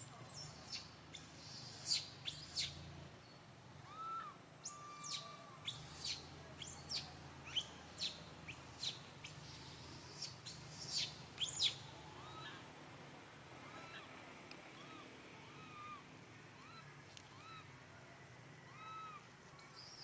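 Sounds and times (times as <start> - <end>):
baby monkey screaming: 0.1 - 2.7, 3.9 - 12.6, 16.6 - 17.6, 18.7 - 20.0
low coo-like calls: 13.6 - 17.7.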